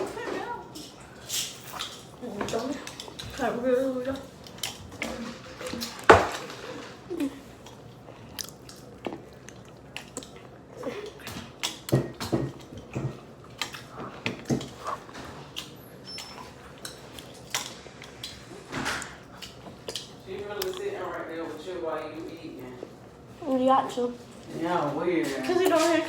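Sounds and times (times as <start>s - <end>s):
person chewing cake: 7.0s - 23.3s.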